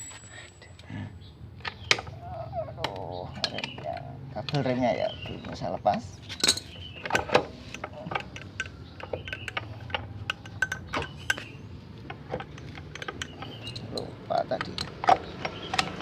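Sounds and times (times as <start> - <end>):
metallic clicks of hand tools: 6.4 - 11.5, 12.1 - 16.0.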